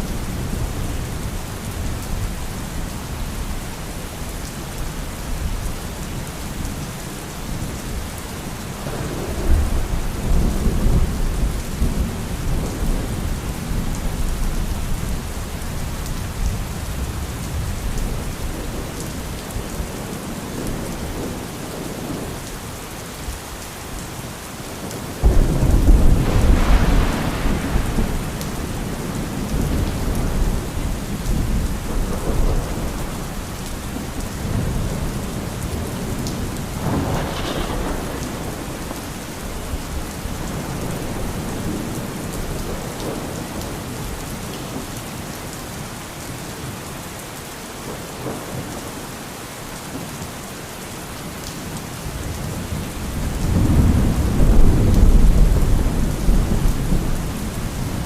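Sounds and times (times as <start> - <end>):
steady rain: 0.0 - 58.0
rolling thunder: 8.8 - 19.0, 24.8 - 44.1, 52.2 - 58.0
sharp thunder crack: 25.2 - 30.8, 36.8 - 39.3.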